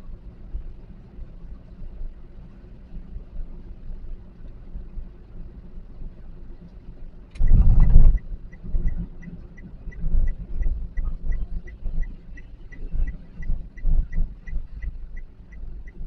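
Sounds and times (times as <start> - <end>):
car engine and road rumble: 0.0 - 16.0
turn signal ticking: 7.3 - 16.0.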